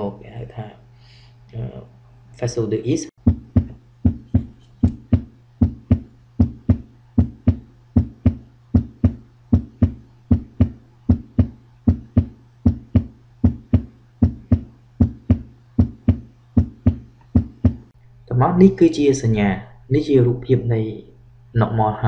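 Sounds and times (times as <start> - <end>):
faint steady hum: 0.0 - 22.0
heartbeat lub-dub: 3.2 - 17.9.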